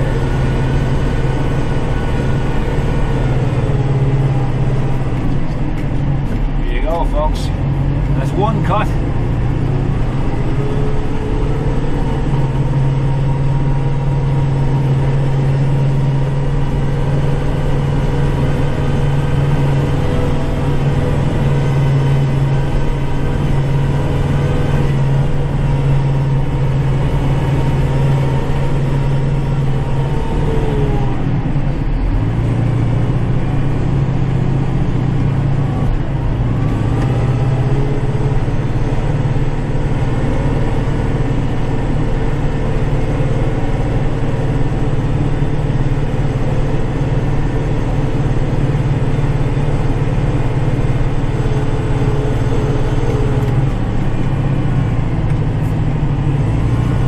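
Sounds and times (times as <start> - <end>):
tractor diesel engine under load: 0.0 - 57.0.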